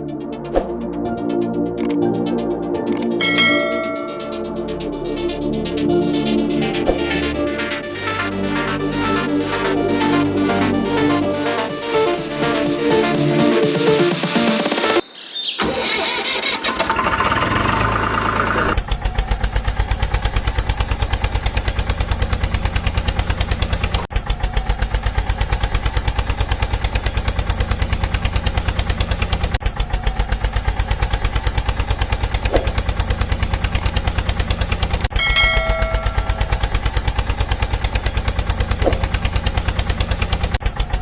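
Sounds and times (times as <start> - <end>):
small engine idling: 16.0 - 41.0.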